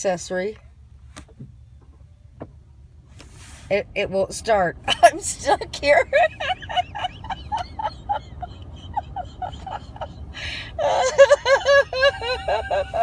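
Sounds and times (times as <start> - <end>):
woman breathing: 8.3 - 11.3.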